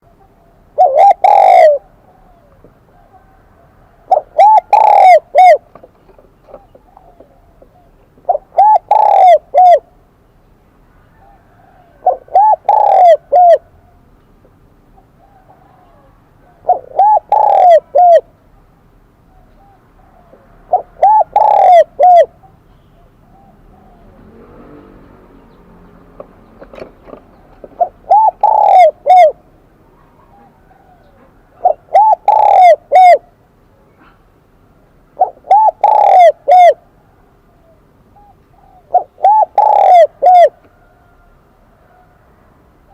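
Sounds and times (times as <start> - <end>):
dove cooing: 0.0 - 10.0, 11.0 - 14.0, 14.9 - 25.5, 26.1 - 34.3, 35.1 - 42.3.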